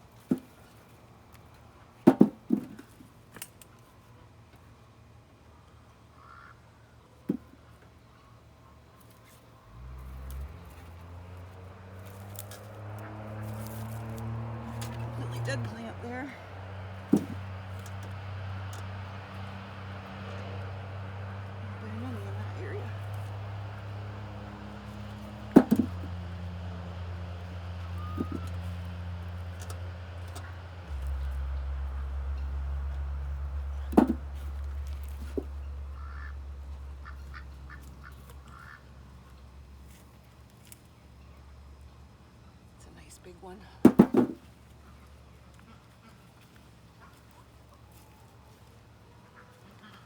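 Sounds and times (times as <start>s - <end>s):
low motor hum: 9.6s - 42.0s.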